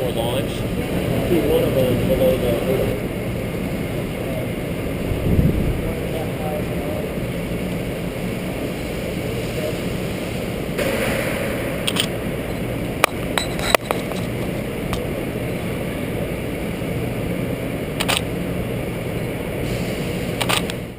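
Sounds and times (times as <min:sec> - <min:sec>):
indoor hall hum and air noise: 0:00.0 - 0:20.9
sharp clicks and clinks: 0:11.8 - 0:14.4.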